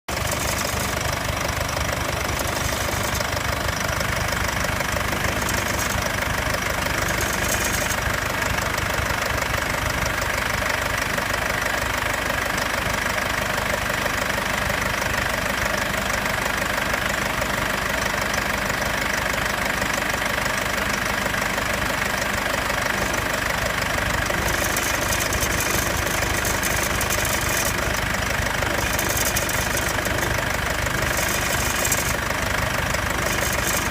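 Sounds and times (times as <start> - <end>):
metallic rattle and clinking: 0.1 - 3.4, 4.8 - 8.1, 24.0 - 33.9
diesel engine idling: 0.1 - 33.9.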